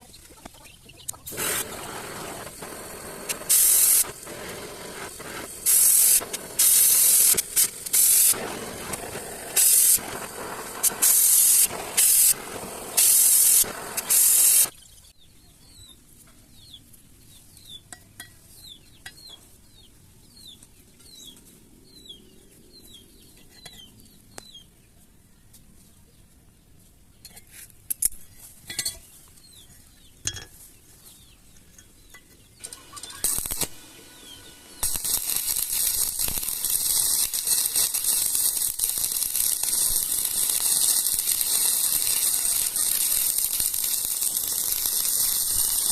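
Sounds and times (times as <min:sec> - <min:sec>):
welding arc crackling and hissing: 0:01.2 - 0:14.7, 0:32.6 - 0:45.9
bird chirping: 0:29.0 - 0:35.0.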